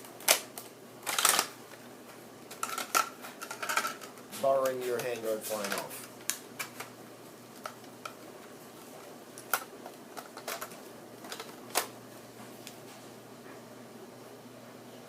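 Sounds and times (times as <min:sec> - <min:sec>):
plastic parts clicking: 0:00.2 - 0:01.5, 0:02.5 - 0:06.9, 0:09.4 - 0:11.9.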